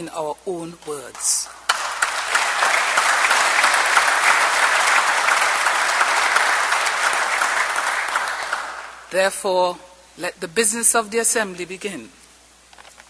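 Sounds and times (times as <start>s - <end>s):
crowd applauding: 1.5s - 9.1s.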